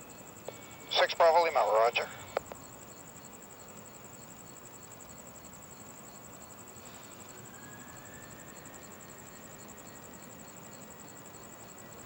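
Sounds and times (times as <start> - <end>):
cricket chirping: 0.0 - 12.0
faint background hiss: 0.0 - 12.0
faint rising whine: 6.4 - 12.0.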